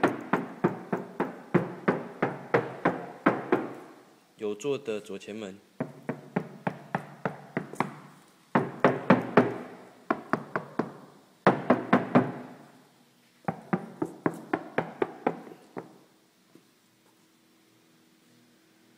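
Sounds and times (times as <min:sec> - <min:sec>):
knuckle knocks on car door: 0:00.0 - 0:03.8, 0:05.8 - 0:12.4, 0:13.5 - 0:16.0.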